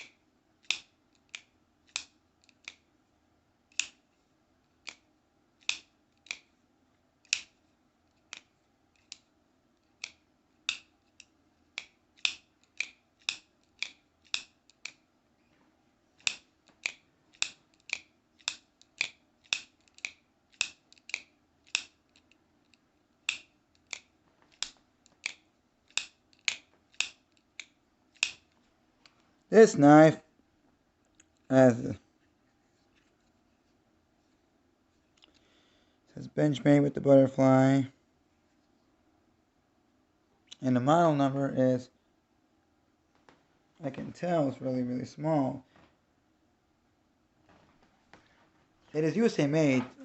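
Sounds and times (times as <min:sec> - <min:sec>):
folding knife clicking open and shut: 0:00.0 - 0:02.8, 0:03.7 - 0:04.0, 0:10.0 - 0:15.0, 0:16.2 - 0:28.5.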